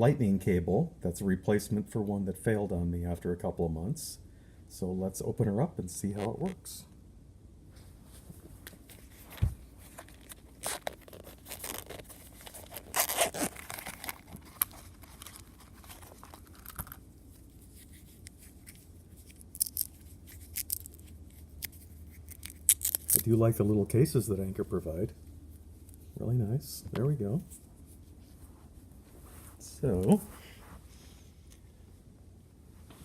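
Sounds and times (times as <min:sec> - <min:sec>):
cardboard and plastic tearing: 0:10.1 - 0:17.0, 0:19.2 - 0:23.4.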